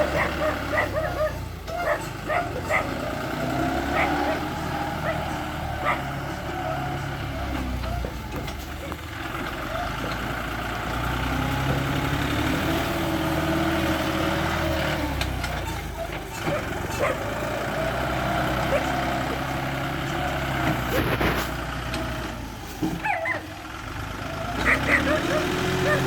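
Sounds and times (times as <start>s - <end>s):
bulldozer diesel engine running: 0.0s - 26.0s.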